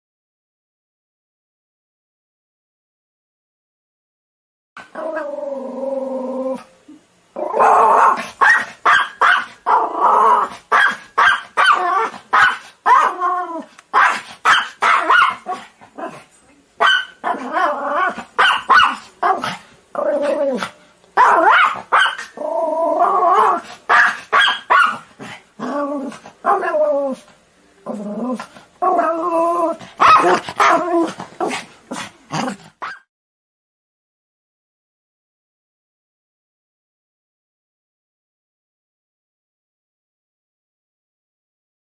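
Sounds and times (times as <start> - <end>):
dog barking: 8.0 - 9.6, 10.7 - 13.2, 14.0 - 15.6, 16.8 - 17.4, 18.4 - 19.5, 21.2 - 22.4, 23.9 - 25.1, 30.0 - 30.9, 32.8 - 33.1.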